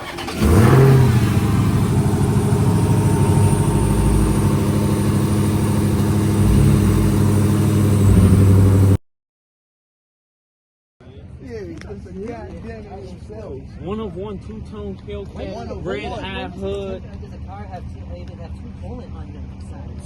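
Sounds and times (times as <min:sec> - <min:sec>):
car engine starting and idling: 0:00.0 - 0:09.0.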